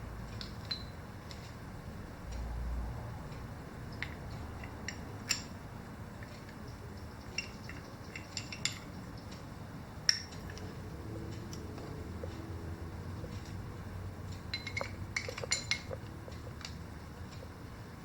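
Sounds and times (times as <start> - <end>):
light metallic clicks and taps: 10.1 - 12.5, 14.3 - 17.5.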